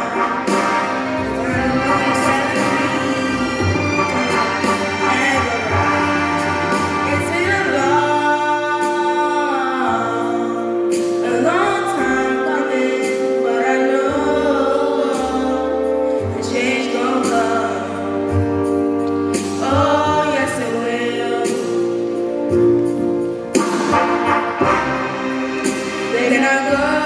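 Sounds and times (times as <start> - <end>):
bass line: 0.0 - 8.7, 19.6 - 27.0
person singing: 0.0 - 18.7, 19.4 - 22.6, 23.6 - 27.0.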